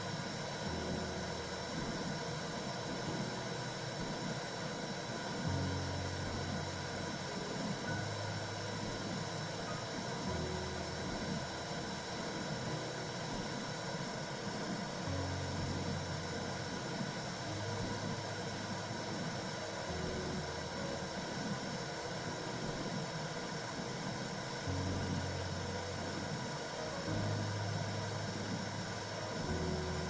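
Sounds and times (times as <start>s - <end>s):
low rumbling hum: 0.0s - 30.0s
steady rushing hiss: 0.0s - 30.0s.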